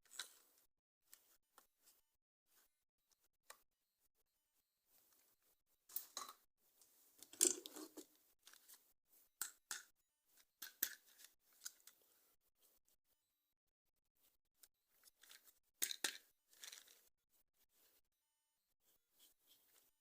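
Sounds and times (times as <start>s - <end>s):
toy packaging crackling: 15.1s - 17.0s.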